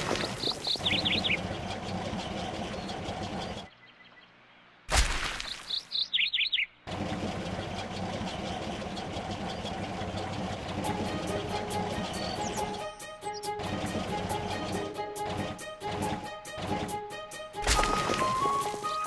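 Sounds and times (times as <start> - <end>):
high falling bird-like chirps: 0.0 - 4.4, 5.2 - 6.8.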